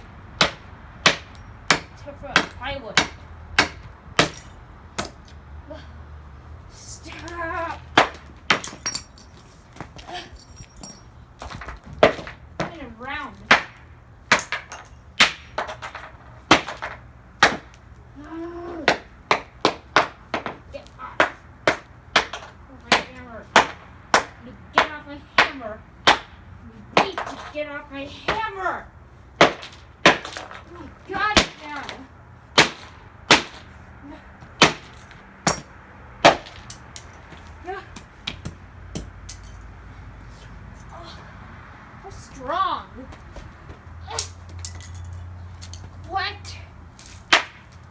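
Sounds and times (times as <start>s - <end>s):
hammer smashing plastic: 32.6s - 33.6s
person's voice: 42.0s - 43.2s.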